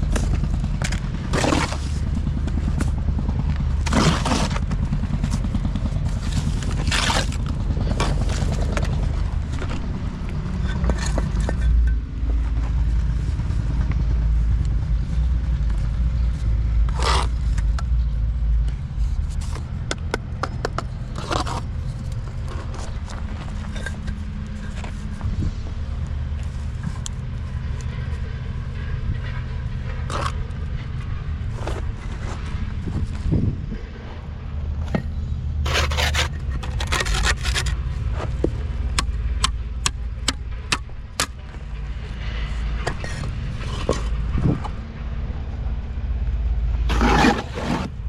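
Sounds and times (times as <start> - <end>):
steady low rumble: 0.0 - 48.0
short scraping sounds: 35.6 - 37.8, 46.9 - 48.0.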